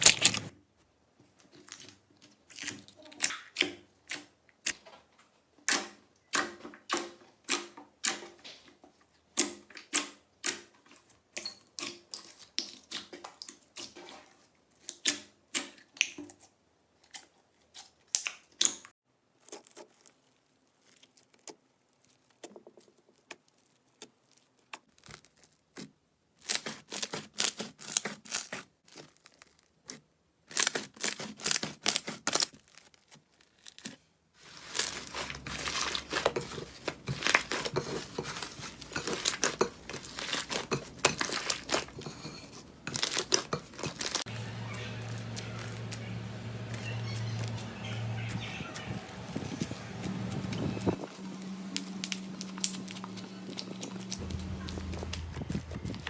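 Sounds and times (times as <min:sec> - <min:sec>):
low hum: 0:44.3 - 0:56.0.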